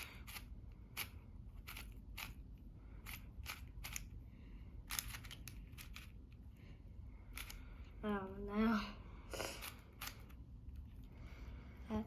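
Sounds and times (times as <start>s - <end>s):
speed cube plastic clicks: 0.0s - 2.4s, 3.0s - 4.1s, 4.9s - 6.2s.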